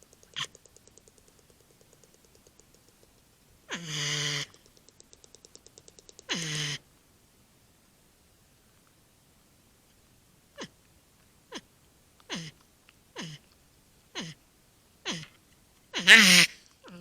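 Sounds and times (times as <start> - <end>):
fast faint ticking: 0.0 - 3.6, 4.2 - 6.4
animal harsh calls: 3.7 - 4.7, 6.3 - 6.8.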